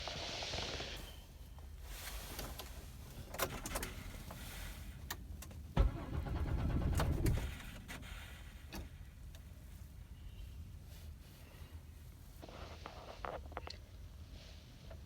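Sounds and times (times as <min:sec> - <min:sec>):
car starter cranking engine: 0:03.4 - 0:04.2, 0:05.8 - 0:08.8.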